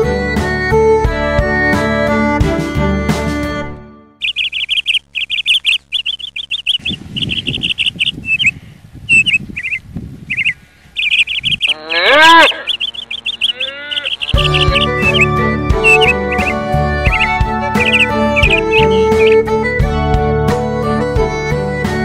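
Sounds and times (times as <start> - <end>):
rising and falling bird call: 4.2 - 19.5
birds chirping in trills: 4.2 - 19.6.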